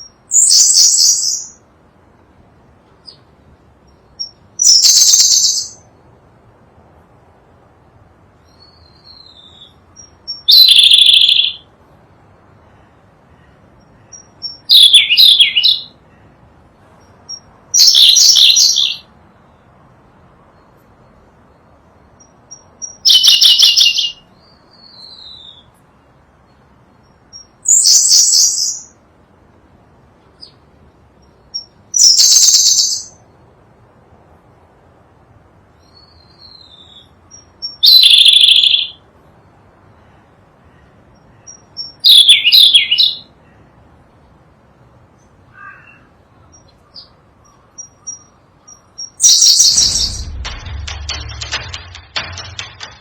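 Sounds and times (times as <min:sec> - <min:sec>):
bird singing high phrases: 0:00.0 - 0:01.6, 0:03.9 - 0:05.9, 0:08.4 - 0:11.7, 0:13.7 - 0:16.0, 0:17.0 - 0:19.1, 0:22.1 - 0:25.7, 0:31.2 - 0:33.2, 0:35.8 - 0:39.0, 0:41.4 - 0:43.4, 0:45.6 - 0:52.7.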